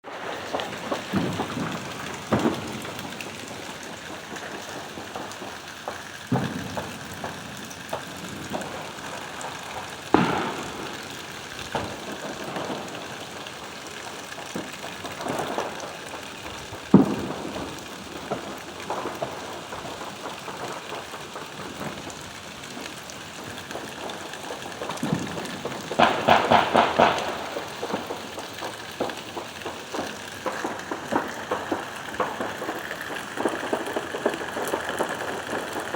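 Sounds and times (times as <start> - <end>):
steady rain falling: 0.0 - 35.9
distant fireworks and gunshots: 0.1 - 35.9
fast string of pops: 24.4 - 35.9.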